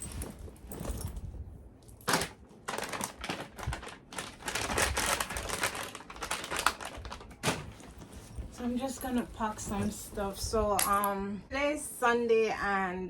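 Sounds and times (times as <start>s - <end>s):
bag rustling: 0.0s - 10.4s.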